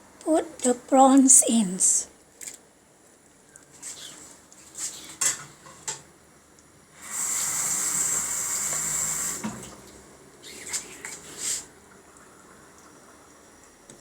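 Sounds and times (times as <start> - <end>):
kitchen tap running: 7.0 - 13.4.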